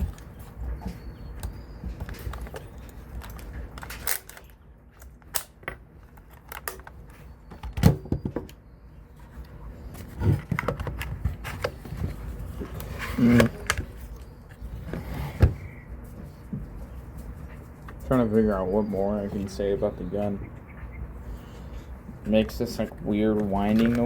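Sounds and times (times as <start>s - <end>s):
small clicks and knocks of rifle parts: 1.4s - 7.8s, 22.2s - 24.0s.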